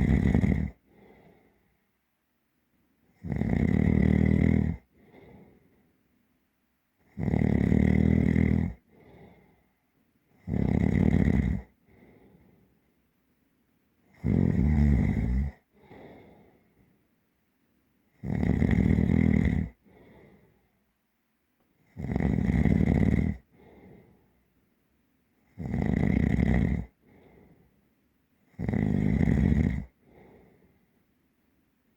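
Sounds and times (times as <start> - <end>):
deep heavy snoring: 0.0 - 1.4, 3.2 - 5.6, 7.1 - 9.6, 10.4 - 12.5, 14.1 - 16.6, 18.2 - 20.4, 21.9 - 24.2, 25.5 - 27.6, 28.5 - 30.6
soft short breath: 0.9 - 1.8, 4.9 - 6.0, 11.8 - 12.8, 15.8 - 17.0, 19.8 - 20.8, 23.5 - 24.4, 27.0 - 27.8, 30.0 - 31.0.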